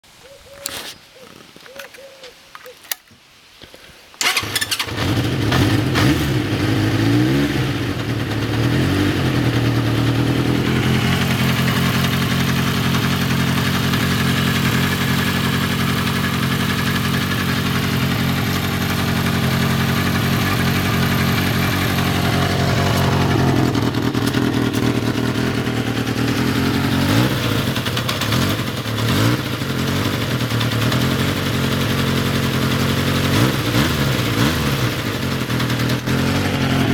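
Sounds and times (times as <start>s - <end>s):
engine starting and idling: 4.2s - 6.5s.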